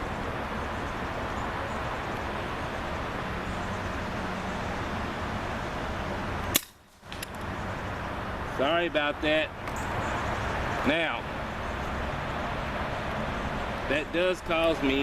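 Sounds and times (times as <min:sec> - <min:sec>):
outdoor background hiss and rumble: 0:00.0 - 0:15.0
sharp click: 0:06.4 - 0:07.5.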